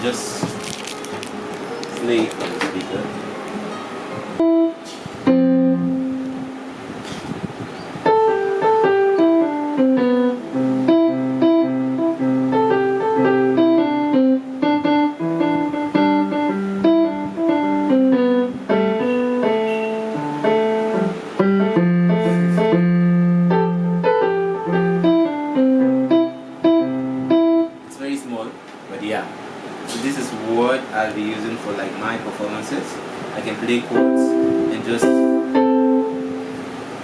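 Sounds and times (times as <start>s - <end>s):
keyboard piano melody: 0.0s - 28.7s, 32.4s - 37.0s.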